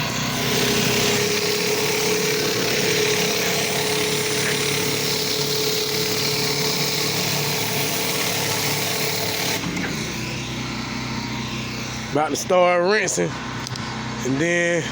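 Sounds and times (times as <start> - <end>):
engine drone: 0.0 - 14.9.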